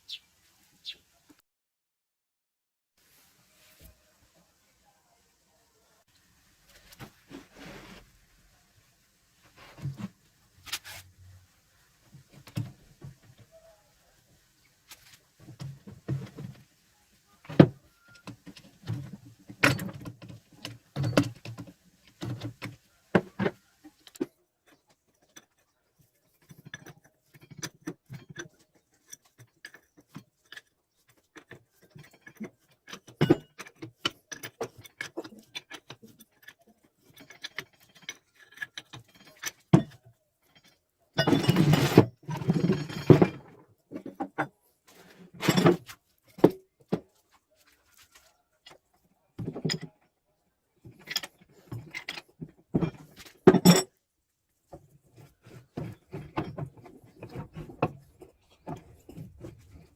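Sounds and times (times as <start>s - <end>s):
metal parts rattling and scraping: 18.2s - 46.6s, 50.8s - 54.0s, 54.6s - 59.9s.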